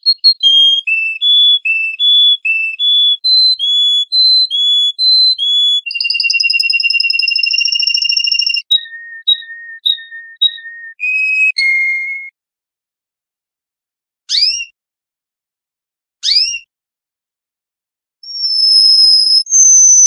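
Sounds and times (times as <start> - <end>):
songbird singing: 0.0 - 12.2, 18.3 - 20.0.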